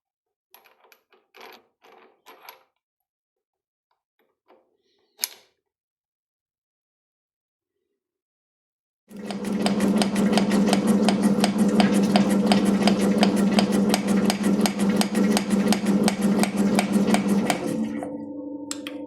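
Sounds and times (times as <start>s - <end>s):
motor hum: 9.1s - 19.0s.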